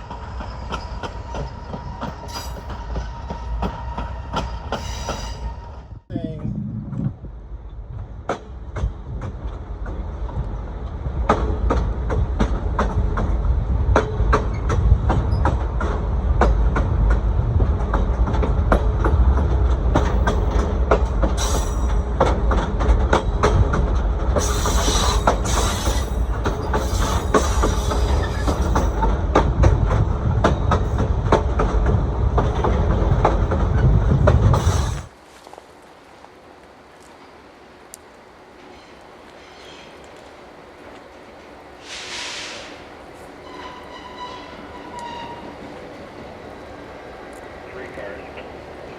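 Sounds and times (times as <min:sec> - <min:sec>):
train wheels clicking over joints: 0:00.0 - 0:05.8, 0:07.9 - 0:35.1
train low rumble: 0:00.0 - 0:48.9
wheel screeching: 0:24.4 - 0:29.0, 0:43.4 - 0:45.8.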